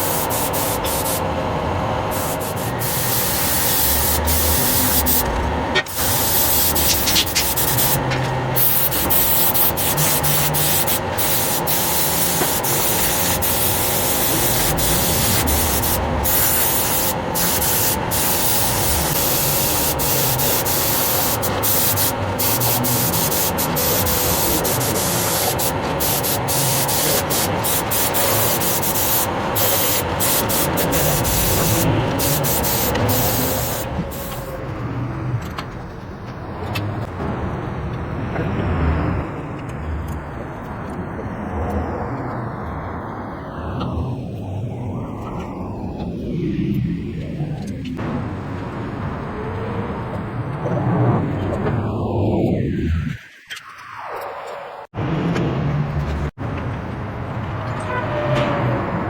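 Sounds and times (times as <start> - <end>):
metal parts being sanded: 0.0 - 1.2, 2.1 - 34.6
faint machine hum: 0.0 - 50.6.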